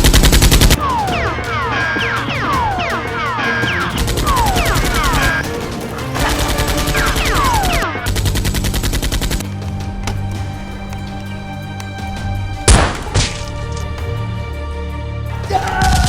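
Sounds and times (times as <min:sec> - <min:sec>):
background music: 0:00.0 - 0:16.0
automatic gunfire: 0:12.7 - 0:13.6.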